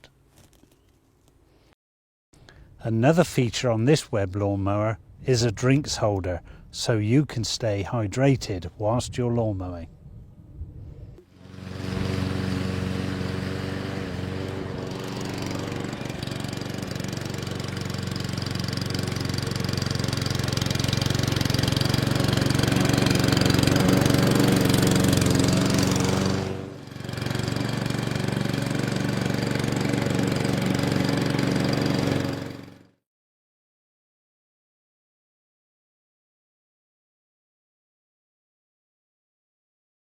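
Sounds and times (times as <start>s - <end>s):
lawnmower engine running: 11.2s - 33.0s.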